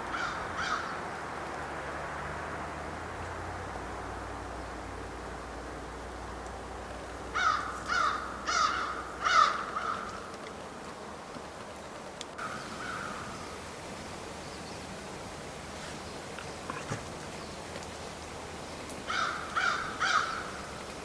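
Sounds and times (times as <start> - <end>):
crow cawing: 0.1 - 0.9, 7.3 - 10.2, 12.4 - 13.3, 19.1 - 20.6.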